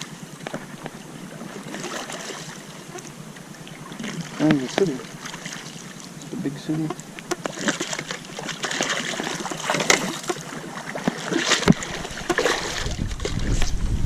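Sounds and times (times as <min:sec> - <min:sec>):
water splashing and trickling: 0:00.0 - 0:13.8
wind buffeting microphone: 0:11.6 - 0:14.0.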